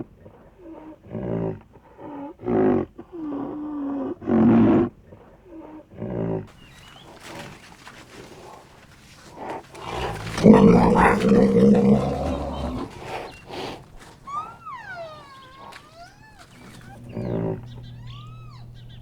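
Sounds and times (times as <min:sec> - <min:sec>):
rhinoceros bellowing: 0:06.0 - 0:19.0.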